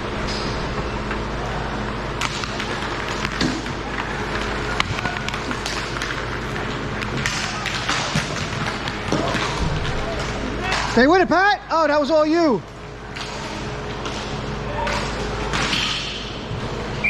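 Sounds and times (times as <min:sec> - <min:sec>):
hockey sticks and puck clacking: 0:02.2 - 0:11.1, 0:13.1 - 0:16.4.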